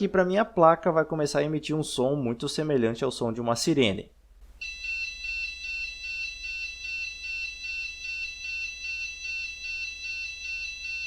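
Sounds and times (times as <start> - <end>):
buzzer two-tone warble: 4.6 - 11.0.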